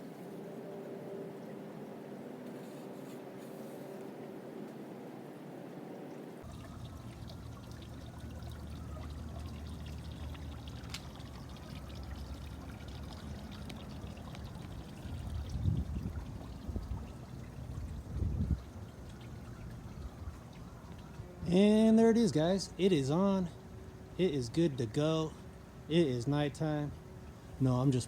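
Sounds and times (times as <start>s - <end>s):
wind buffeting microphone: 13.7s - 21.5s.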